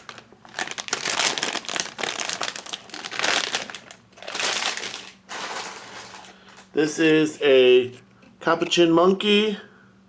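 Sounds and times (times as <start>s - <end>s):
packaging crinkling: 0.0s - 6.7s.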